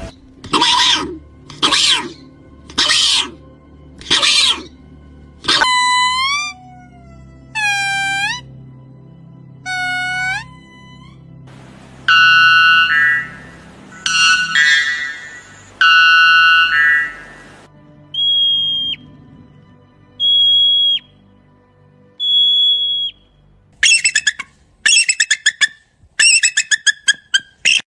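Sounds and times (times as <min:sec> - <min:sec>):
short chattering calls: 0:11.6 - 0:17.6
pitched ringing animal call: 0:12.0 - 0:19.0, 0:23.8 - 0:27.8
long falling whistles: 0:12.0 - 0:19.1, 0:20.2 - 0:21.2, 0:22.2 - 0:23.3.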